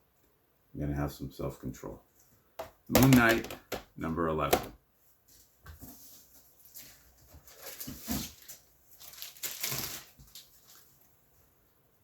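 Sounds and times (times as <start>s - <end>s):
packaging rustling and crinkling: 5.8s - 11.1s.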